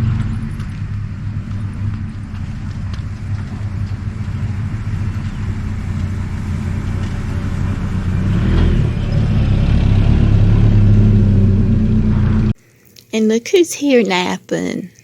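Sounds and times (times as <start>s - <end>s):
truck engine low rumble: 0.0s - 12.6s.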